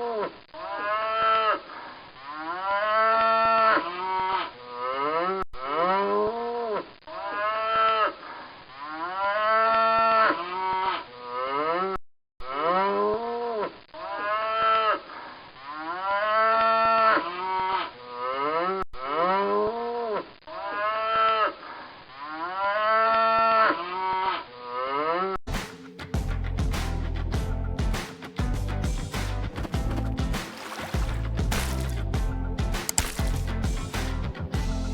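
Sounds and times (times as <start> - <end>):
guitar music: 26.0 - 34.9.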